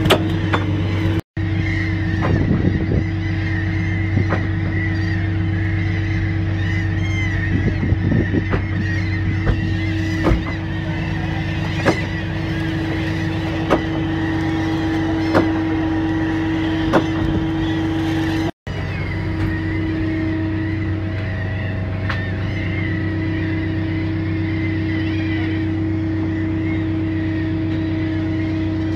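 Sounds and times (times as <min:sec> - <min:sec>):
boat engine humming: 0:00.0 - 0:28.9
sharp knocks: 0:09.4 - 0:10.5.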